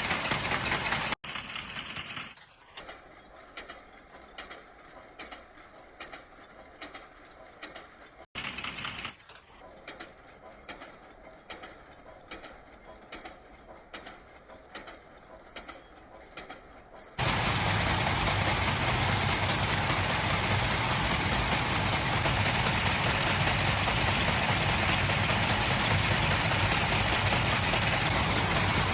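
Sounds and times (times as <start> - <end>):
factory machinery clattering: 0.0 - 2.4, 17.2 - 28.9
loud steady machine noise: 0.0 - 2.4, 17.2 - 28.9
steady machine hum: 17.2 - 28.9.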